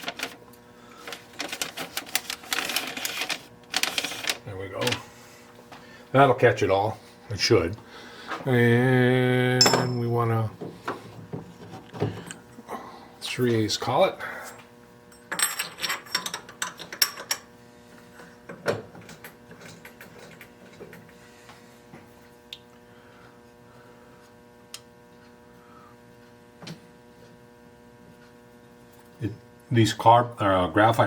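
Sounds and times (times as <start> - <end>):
steady electrical hum: 0.0 - 31.0
metal clinks and knocks: 9.6 - 10.1, 15.1 - 17.4.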